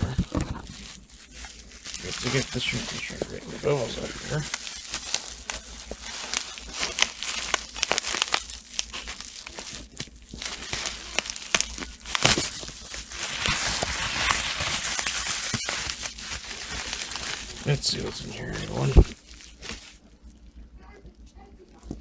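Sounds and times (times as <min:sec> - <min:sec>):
bubble wrap crinkling and crackling: 0:00.0 - 0:22.0.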